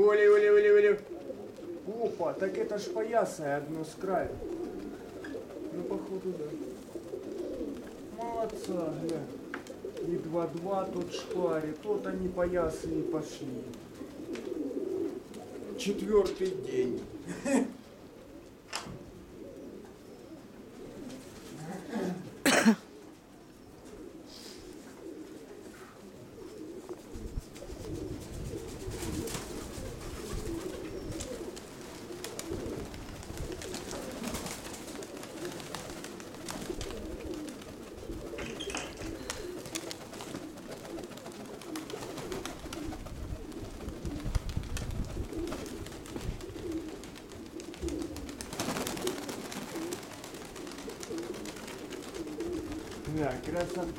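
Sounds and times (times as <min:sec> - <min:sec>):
pigeons cooing: 0:00.0 - 0:53.9
wind rumbling on microphone: 0:27.1 - 0:31.3, 0:42.7 - 0:46.8.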